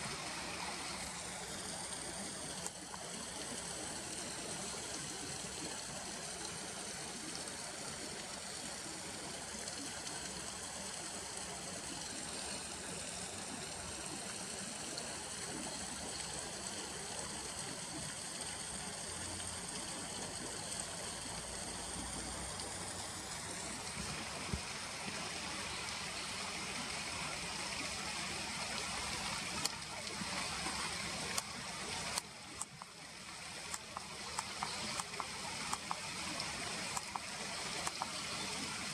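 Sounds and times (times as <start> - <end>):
river water flowing: 0.0 - 38.9
sharp clicks: 32.1 - 32.9, 33.7 - 36.1, 36.8 - 38.2.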